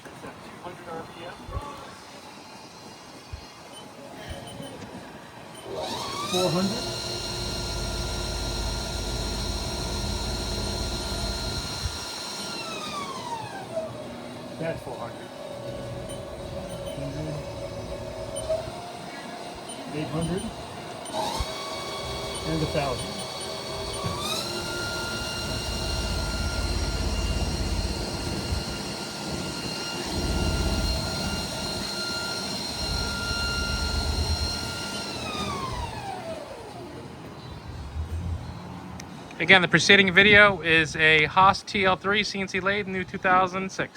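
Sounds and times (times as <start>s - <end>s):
lathe spindle whine: 4.6s - 37.4s.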